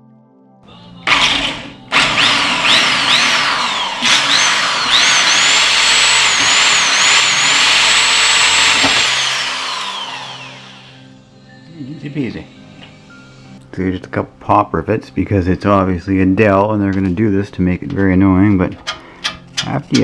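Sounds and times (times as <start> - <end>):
power drill drilling out rivets: 1.1 - 11.0.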